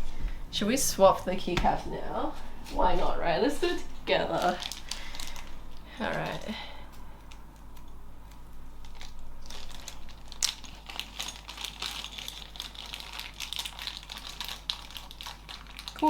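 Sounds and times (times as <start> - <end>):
plastic packaging crinkling: 2.6 - 16.0.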